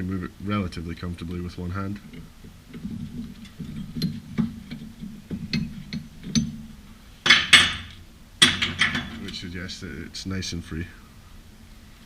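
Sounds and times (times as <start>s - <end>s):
metallic clicks and knocks: 2.1s - 9.4s.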